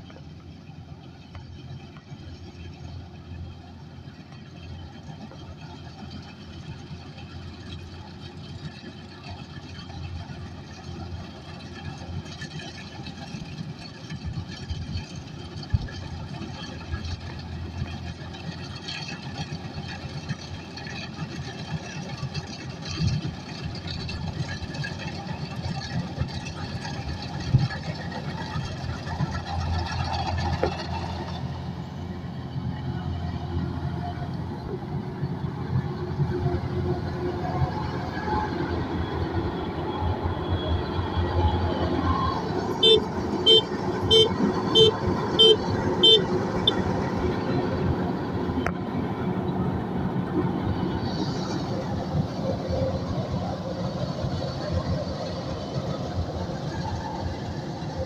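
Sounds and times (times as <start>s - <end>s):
combine harvester running: 0.0s - 58.0s.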